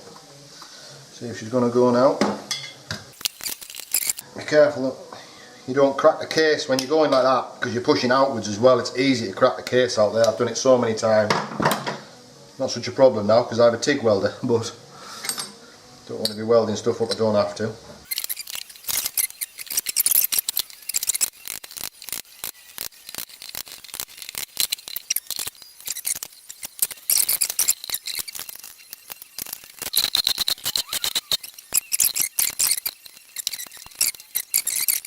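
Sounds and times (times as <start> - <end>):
metallic clicking of tools: 18.1 - 35.0.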